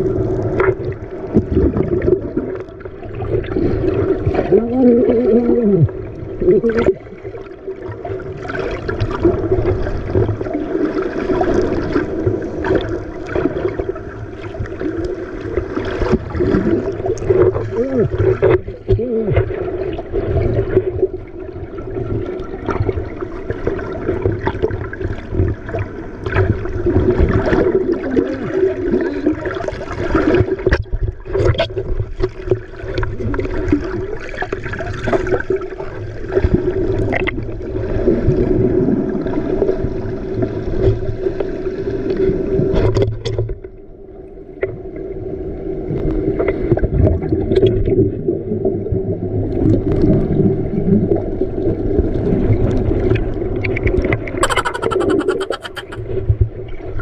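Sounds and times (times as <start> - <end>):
water: 0.0 - 57.0.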